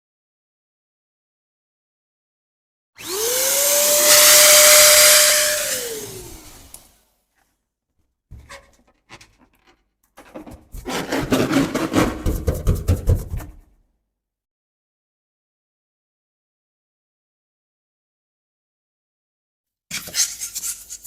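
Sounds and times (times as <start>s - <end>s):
electric balloon pump whining: 3.0s - 6.9s
balloon rubbing and crackling: 10.6s - 13.6s.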